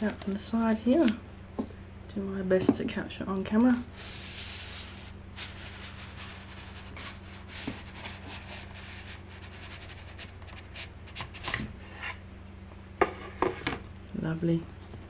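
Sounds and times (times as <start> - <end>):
steady low hum: 0.0 - 15.0
packaging rustling and scraping: 4.0 - 12.2.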